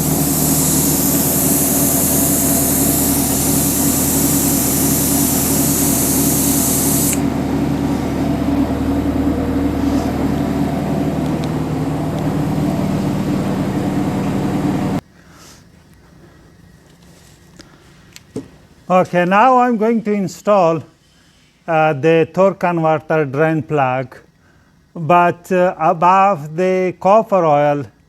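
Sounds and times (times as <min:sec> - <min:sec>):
machine hum: 0:00.0 - 0:15.0
high hiss of air: 0:00.0 - 0:15.7.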